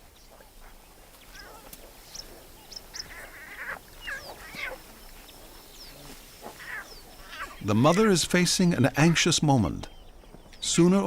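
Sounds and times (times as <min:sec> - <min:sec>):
lion cubs squalling: 0:00.0 - 0:08.2.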